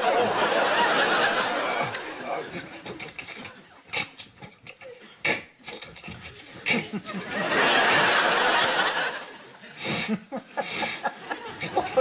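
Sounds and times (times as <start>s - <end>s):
audience laughter: 0.0s - 3.8s, 6.6s - 12.0s
mouth noises: 2.2s - 7.0s
hiss made with the mouth: 9.8s - 11.1s.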